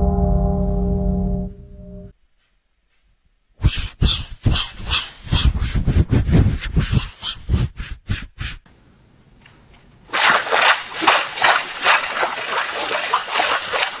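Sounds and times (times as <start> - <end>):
trickling and sloshing water: 10.0 - 14.0.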